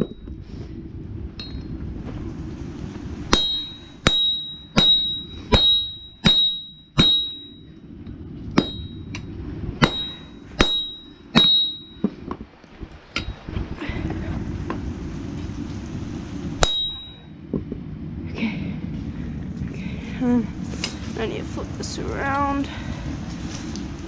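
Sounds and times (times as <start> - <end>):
hammer striking steel on anvil: 3.3 - 7.6, 8.6 - 12.1, 16.6 - 17.2.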